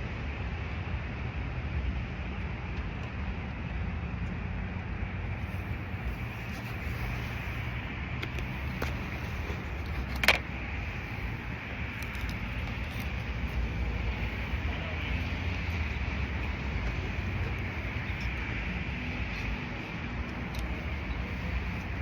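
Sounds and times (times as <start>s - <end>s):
road traffic rumble: 0.0s - 22.0s.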